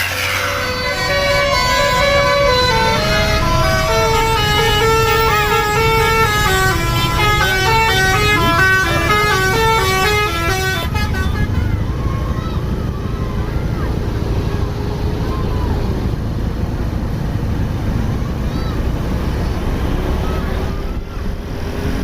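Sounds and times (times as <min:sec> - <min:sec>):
musical bus horn melody: 0:00.0 - 0:11.9
bus engine rumble: 0:00.0 - 0:22.0.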